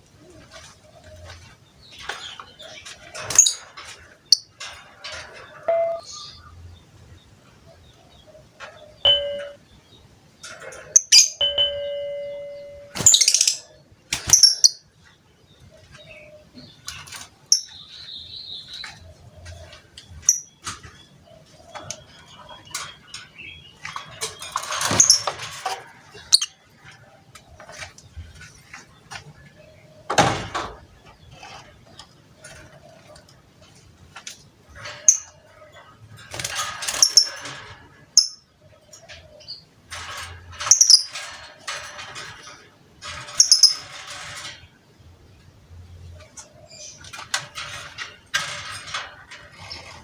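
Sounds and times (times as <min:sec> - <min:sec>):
bird chirping: 0:05.5 - 0:25.3
steady beep tones: 0:05.7 - 0:06.1, 0:09.1 - 0:09.6, 0:11.4 - 0:13.0.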